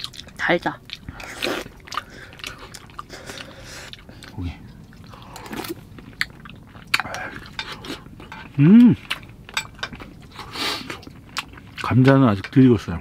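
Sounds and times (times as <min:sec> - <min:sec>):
person vocal sound: 0:08.6 - 0:09.0.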